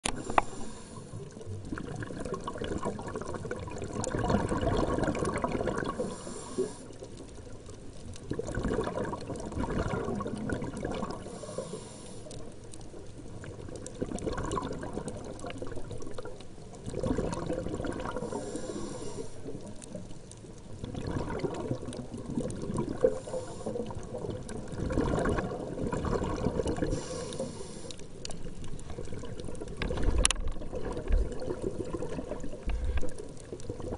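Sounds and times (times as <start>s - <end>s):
water sloshing and trickling: 7.0s - 11.3s, 19.4s - 27.2s, 28.0s - 33.9s
small clicks: 26.7s - 31.2s.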